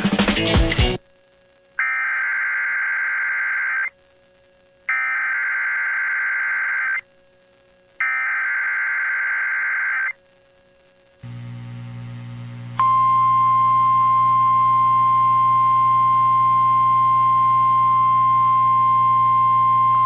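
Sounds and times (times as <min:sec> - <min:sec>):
screeching digital data tones: 0:01.8 - 0:03.9, 0:04.9 - 0:07.0, 0:08.0 - 0:10.2
low buzzing hum: 0:10.2 - 0:20.0.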